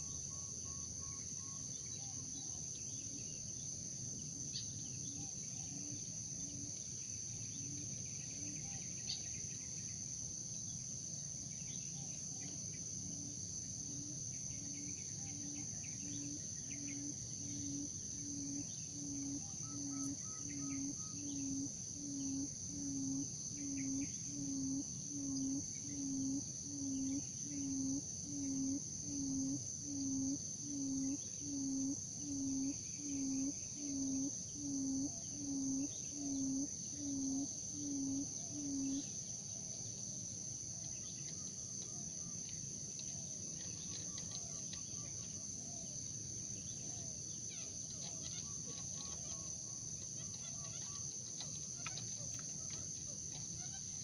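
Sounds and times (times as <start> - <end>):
high insect drone: 0.0 - 54.0.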